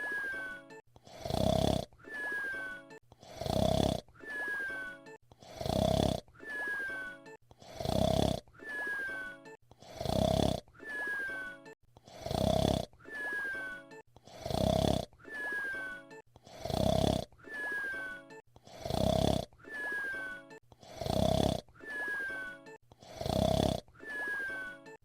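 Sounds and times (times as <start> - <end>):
falling whistle: 0.0 - 0.6, 2.1 - 2.8, 4.2 - 5.0, 6.4 - 7.2, 8.6 - 9.4, 10.8 - 11.6, 13.1 - 13.9, 15.3 - 16.0, 17.5 - 18.2, 19.7 - 20.4, 21.8 - 22.6, 24.0 - 24.8
cartoon snoring breath: 0.0 - 25.0.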